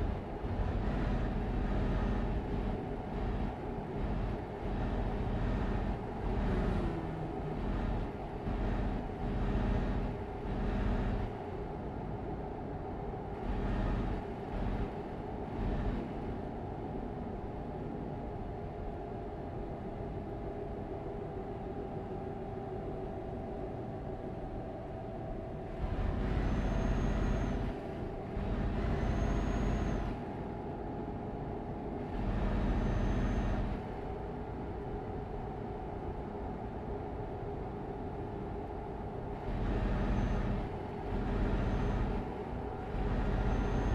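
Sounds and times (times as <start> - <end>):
car road and engine noise: 0.0 - 43.9
high squeal-like tone: 26.4 - 27.7, 28.9 - 30.1, 32.7 - 33.7.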